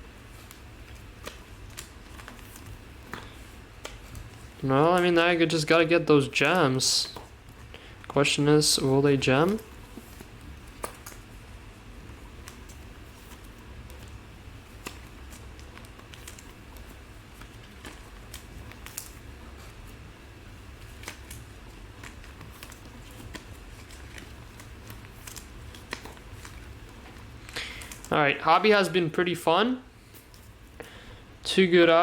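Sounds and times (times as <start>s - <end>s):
steady low hum: 0.0s - 32.0s
cards and packaging clicking: 0.4s - 5.2s, 9.1s - 11.3s, 12.3s - 19.8s, 20.7s - 28.2s.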